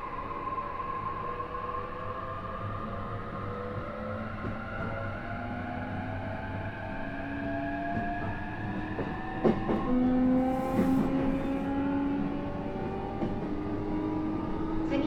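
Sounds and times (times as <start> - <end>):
train interior rumble: 7.8 - 15.0.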